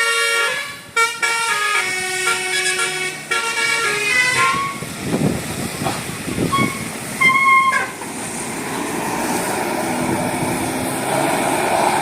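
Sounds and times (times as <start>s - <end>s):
bus horn two-note honk: 0.0s - 4.8s, 6.5s - 8.0s
bus running noise: 0.0s - 12.0s.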